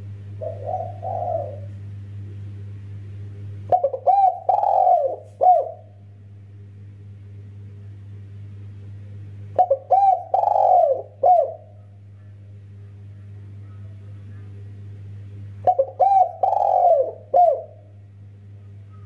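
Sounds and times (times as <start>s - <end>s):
steady low hum: 0.0s - 19.0s
dove cooing: 0.4s - 1.8s, 3.7s - 6.0s, 9.6s - 11.9s, 15.6s - 17.9s.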